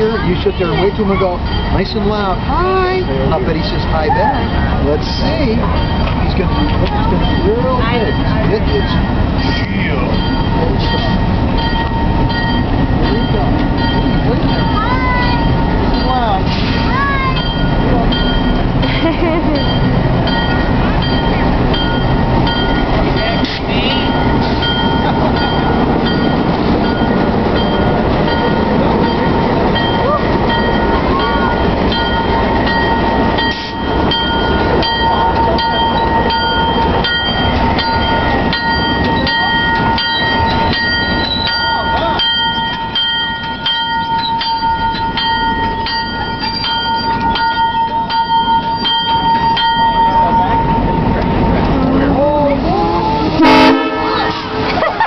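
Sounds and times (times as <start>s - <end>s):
train wheels clattering over rails: 0.0s - 55.0s.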